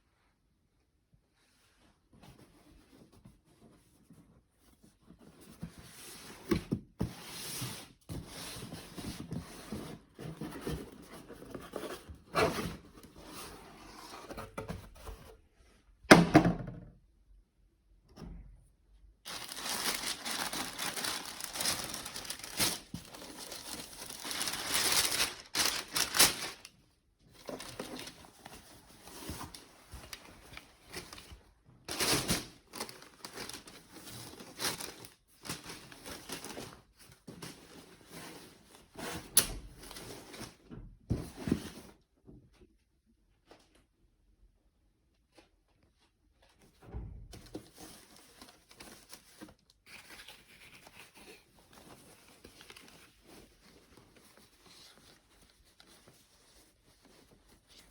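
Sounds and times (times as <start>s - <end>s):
packaging crinkling and tearing: 19.3s - 26.8s, 27.6s - 28.2s, 29.5s - 36.6s.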